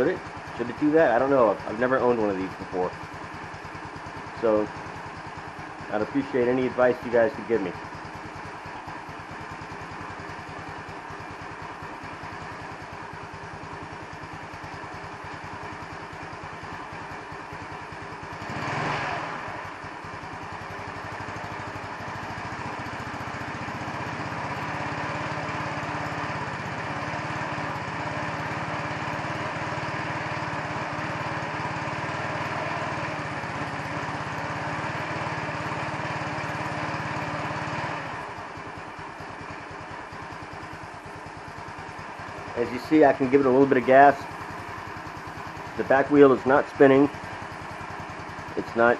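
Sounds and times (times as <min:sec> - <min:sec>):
scooter engine idling: 0:00.0 - 0:48.9.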